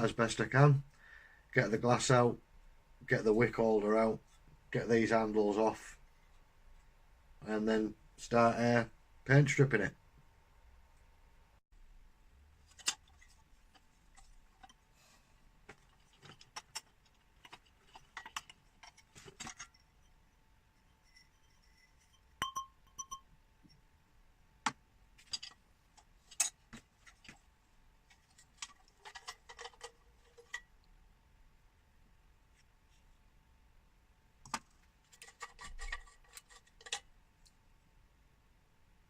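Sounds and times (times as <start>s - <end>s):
metal and glass clinks: 22.1s - 23.3s
ringing clinks: 22.4s - 23.3s.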